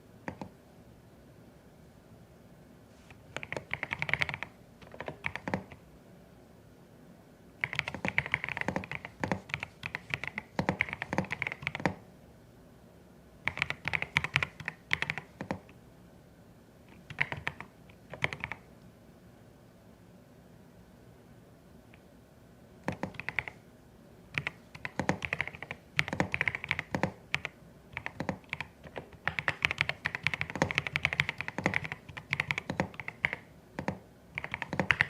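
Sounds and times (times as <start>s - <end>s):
mechanical keyboard typing: 0.3s - 0.5s, 3.3s - 5.8s, 7.6s - 12.0s, 13.4s - 15.7s, 16.9s - 18.6s, 22.8s - 23.6s, 24.3s - 35.0s.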